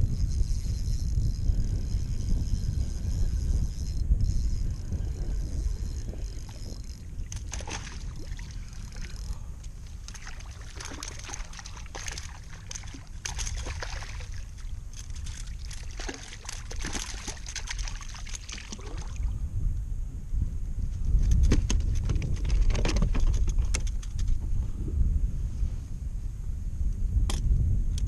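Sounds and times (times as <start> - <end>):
low steady rumble: 0.0 - 22.6, 23.4 - 28.0
water splashing and dripping: 7.3 - 9.2, 10.0 - 19.2.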